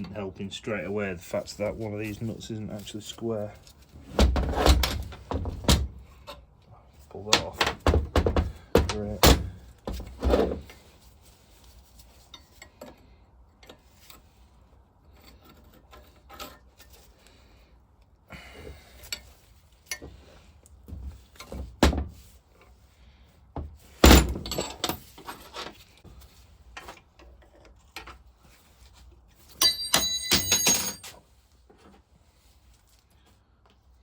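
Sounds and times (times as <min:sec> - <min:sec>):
metal parts clanking on a workbench: 0:24.0 - 0:25.8, 0:29.5 - 0:31.2
ringing metallic clatter: 0:29.5 - 0:31.2.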